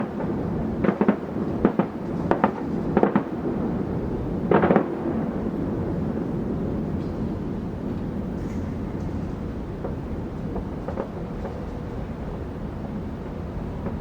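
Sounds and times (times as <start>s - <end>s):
firework shells bursting: 0.0s - 5.4s, 8.3s - 14.0s
steady low rumble: 0.0s - 14.0s.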